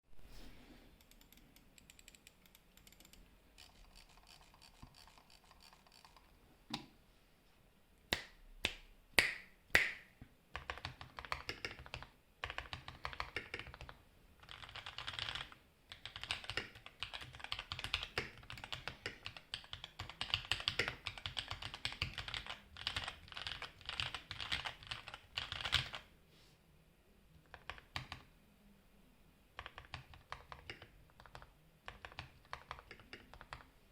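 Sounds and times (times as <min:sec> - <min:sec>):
typing on mechanical keyboard: 0:01.0 - 0:06.3, 0:10.5 - 0:26.1, 0:27.4 - 0:28.3, 0:29.6 - 0:33.7.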